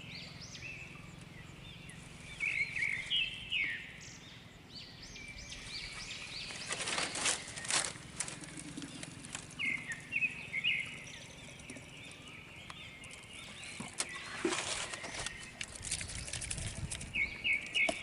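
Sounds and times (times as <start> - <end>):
birds chirping: 0.0 - 18.0
light rustling: 5.9 - 10.0.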